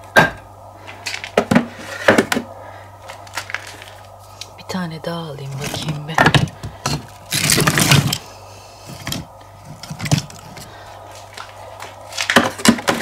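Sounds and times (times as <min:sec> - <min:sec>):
firewood logs clattering: 0:05.5 - 0:13.0.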